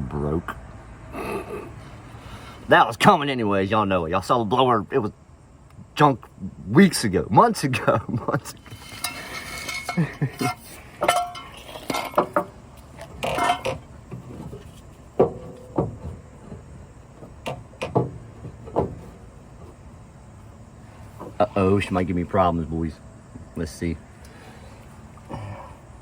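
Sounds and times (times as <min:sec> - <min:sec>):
hand tools clanking on metal: 0:08.5 - 0:19.8.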